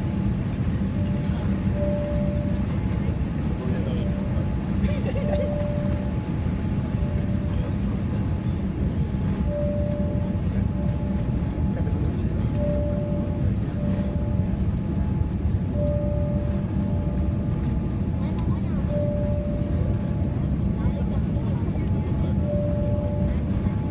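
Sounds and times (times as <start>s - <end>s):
aircraft engines and airflow in cabin: 0.0s - 23.9s
faint short tone: 1.0s - 2.9s, 9.4s - 11.4s, 12.4s - 14.5s, 15.7s - 17.4s, 18.9s - 20.2s, 22.4s - 23.9s.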